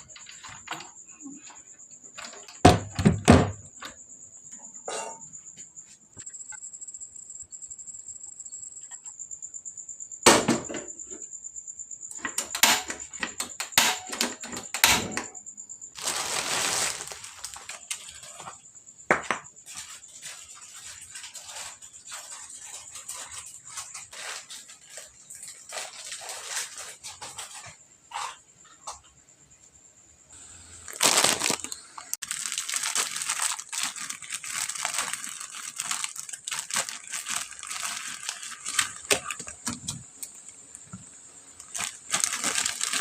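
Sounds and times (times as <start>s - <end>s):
dishes and utensils clattering: 4.8s - 5.3s.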